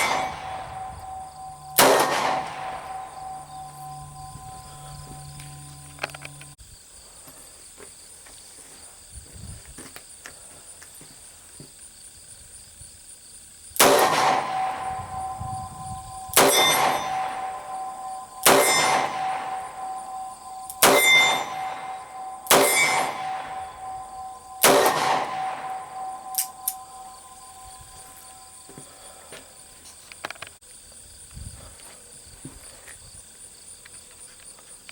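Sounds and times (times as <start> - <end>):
revolver shots ringing: 0.0 - 6.6, 13.8 - 27.6.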